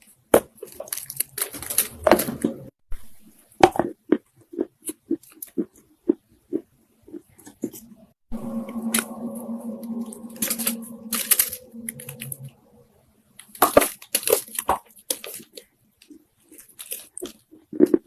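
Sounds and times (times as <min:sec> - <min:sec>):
low hum: 0:08.3 - 0:13.2.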